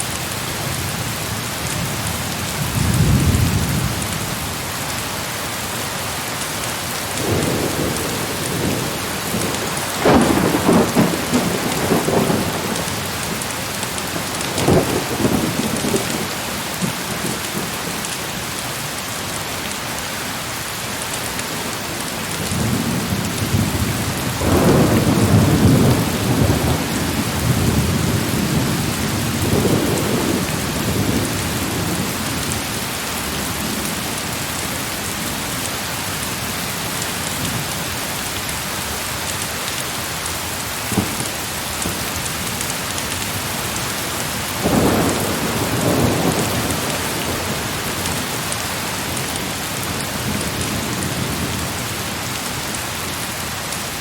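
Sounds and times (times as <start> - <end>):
heavy rain falling: 0.0 - 54.0
thunder rumbling: 2.6 - 4.6, 7.2 - 18.1, 22.0 - 32.6, 40.7 - 51.8.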